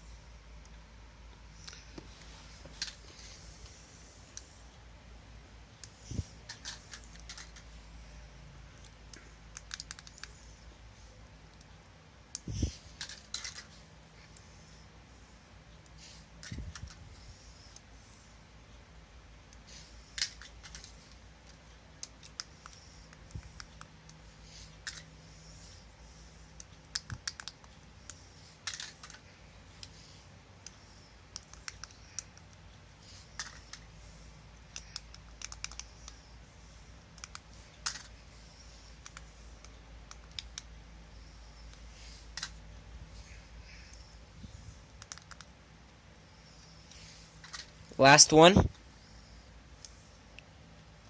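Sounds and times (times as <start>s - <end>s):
faint low hum: 0.0s - 51.0s.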